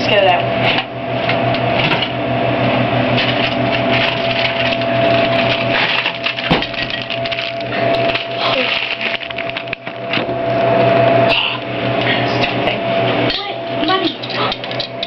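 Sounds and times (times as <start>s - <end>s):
vending machine hum: 0.0s - 15.0s
mechanical whirring rattle: 3.1s - 10.3s, 14.0s - 15.0s.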